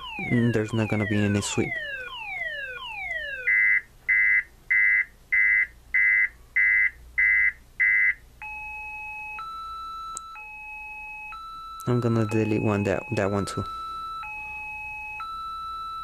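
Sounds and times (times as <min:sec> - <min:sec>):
car alarm siren: 0:00.0 - 0:16.0.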